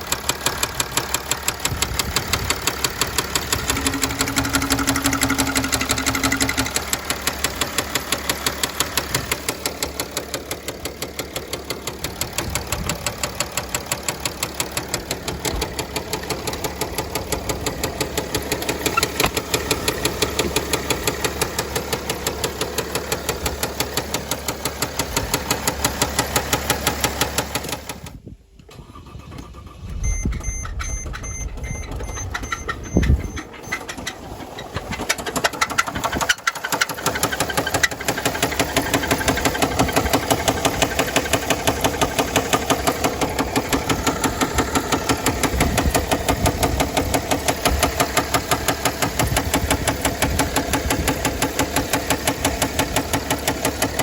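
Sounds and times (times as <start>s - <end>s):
diesel engine knocking: 0.0s - 28.2s, 30.1s - 54.0s
electronic beeps: 30.0s - 33.8s.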